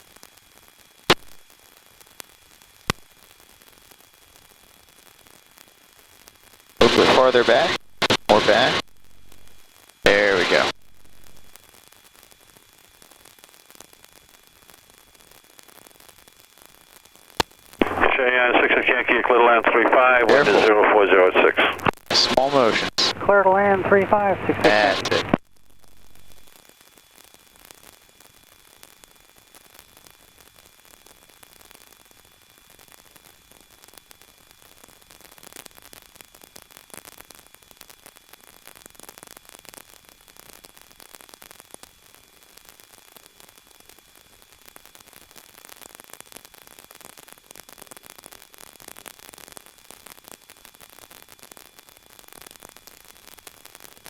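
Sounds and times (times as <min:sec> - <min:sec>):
intercom static hiss: 0:06.8 - 0:11.6, 0:17.8 - 0:26.5.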